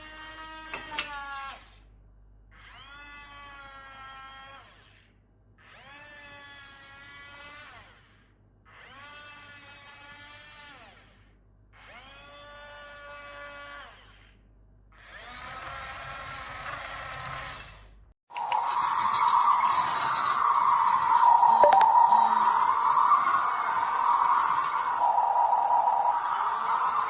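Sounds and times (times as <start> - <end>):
toy electric motors whining: 2.6 - 5.0, 15.0 - 27.0.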